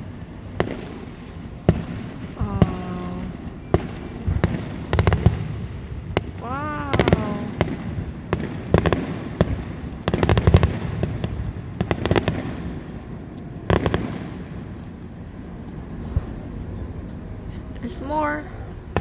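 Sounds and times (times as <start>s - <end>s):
firework crackling pops: 0.0s - 15.0s
firework bangs: 0.0s - 16.6s.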